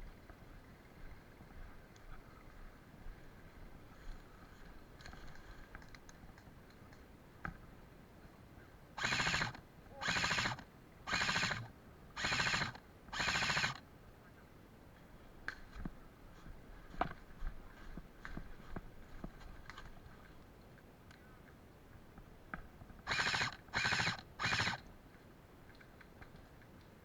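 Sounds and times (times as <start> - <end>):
faint clicks and knocks: 4.1 - 7.7
airsoft rifle full-auto bursts: 9.0 - 13.8, 23.1 - 24.8.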